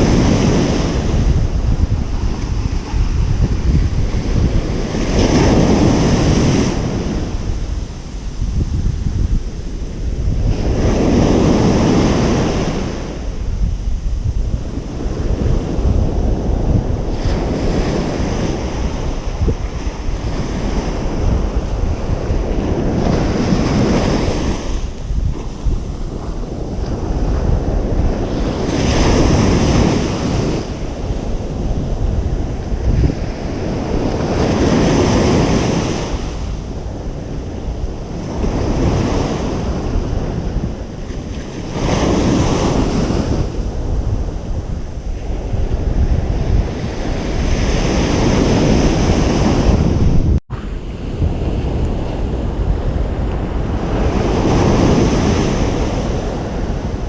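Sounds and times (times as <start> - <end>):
ocean waves breaking: 0.0 - 57.0
steady low rumble: 5.8 - 10.8.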